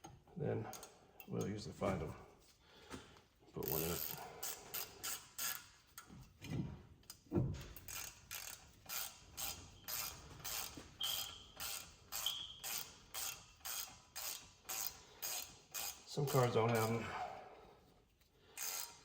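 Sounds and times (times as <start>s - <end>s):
hand ratchet clicking: 3.6s - 6.2s, 7.0s - 17.0s, 18.5s - 19.0s
brief squeaks: 11.0s - 11.6s, 12.2s - 12.6s.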